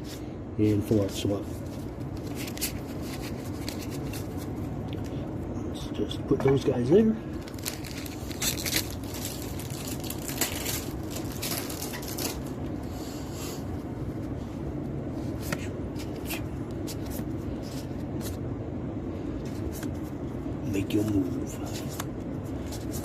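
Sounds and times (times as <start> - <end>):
low background hum: 0.0 - 23.0
papery rustle: 0.9 - 4.7, 7.4 - 12.6, 20.9 - 23.0.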